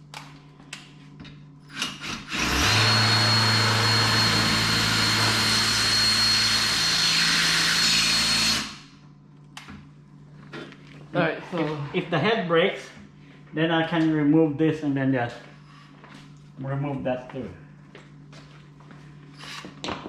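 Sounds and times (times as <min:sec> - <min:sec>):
power drill whining: 0:01.8 - 0:08.8.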